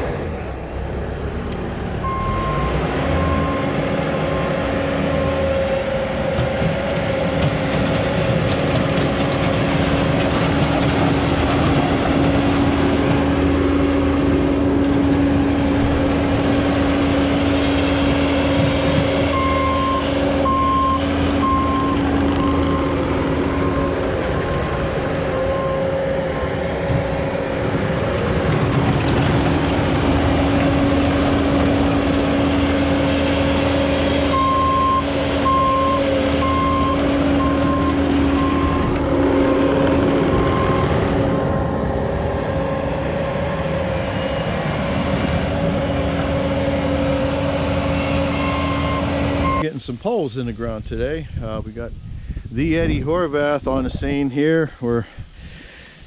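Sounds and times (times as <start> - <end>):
heavy vehicle engine running: 0.0 - 56.0
reversing alarm beeping: 2.0 - 6.0, 19.2 - 24.2, 25.4 - 26.1, 34.3 - 39.0, 40.3 - 41.3, 47.8 - 49.7.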